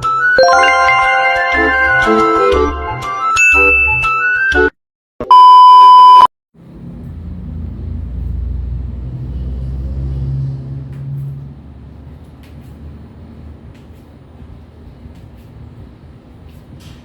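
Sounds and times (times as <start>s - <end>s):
chiming jingle: 0.4s - 4.0s
loud electronic beep: 0.4s - 4.1s, 5.2s - 6.3s.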